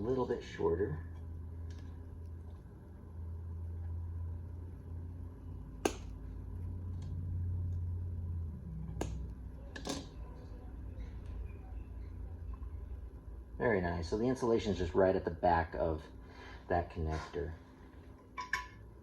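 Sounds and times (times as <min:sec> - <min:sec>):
steady low hum: 0:00.0 - 0:19.0
side cutters snipping wire: 0:05.8 - 0:06.2.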